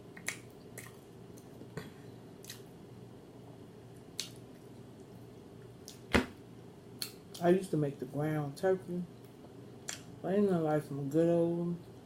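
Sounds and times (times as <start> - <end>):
low steady hum: 0.0 - 12.0
wet mouth smacking while chewing: 0.2 - 1.5, 4.2 - 4.4.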